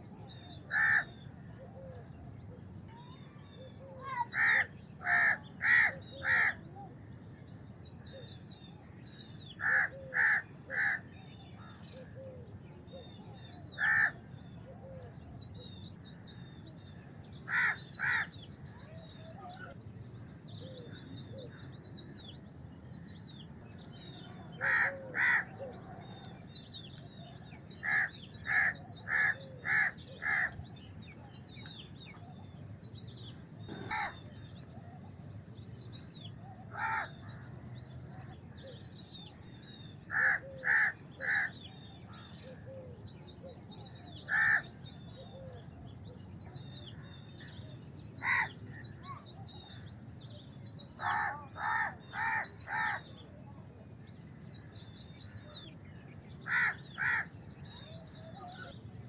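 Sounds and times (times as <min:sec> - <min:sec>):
small birds chirping: 0:00.0 - 0:59.0
crows cawing: 0:00.7 - 0:01.2, 0:04.0 - 0:06.6, 0:09.6 - 0:11.1, 0:13.8 - 0:14.2, 0:17.5 - 0:18.4, 0:24.6 - 0:25.7, 0:27.8 - 0:30.6, 0:33.7 - 0:34.3, 0:36.7 - 0:37.3, 0:40.1 - 0:41.6, 0:44.3 - 0:44.7, 0:48.2 - 0:48.6, 0:51.0 - 0:53.1, 0:56.4 - 0:57.4.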